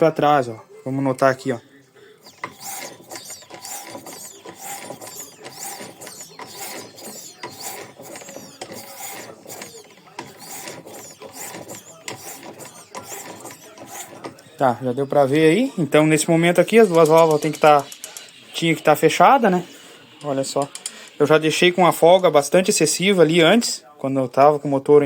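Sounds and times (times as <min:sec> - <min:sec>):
engine parts clicking and scraping: 0:01.2 - 0:23.4
air puffing from intake: 0:19.6 - 0:21.3.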